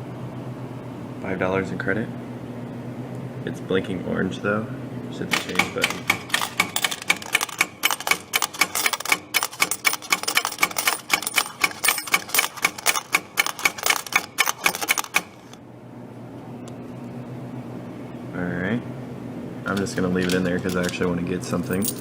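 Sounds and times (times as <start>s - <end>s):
vending machine clicking: 5.3s - 15.6s.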